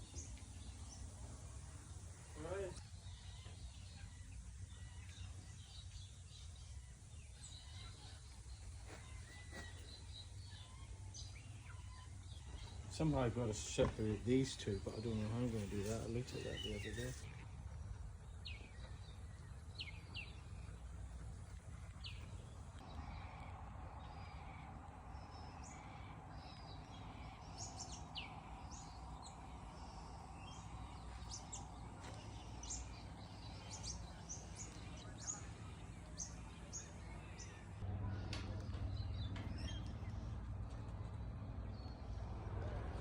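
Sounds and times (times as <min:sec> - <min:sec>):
steady hum: 0:00.0 - 0:39.4
small birds chirping: 0:00.0 - 0:43.0.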